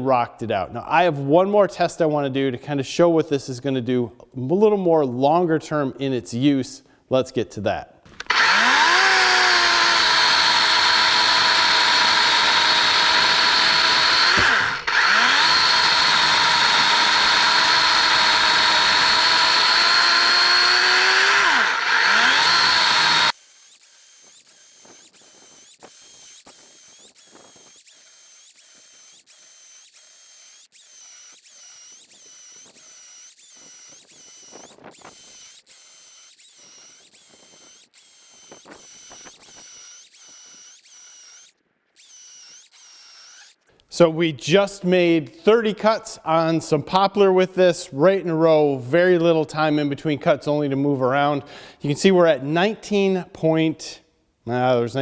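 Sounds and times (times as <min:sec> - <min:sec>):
chainsaw cutting wood: 0:08.1 - 0:43.6.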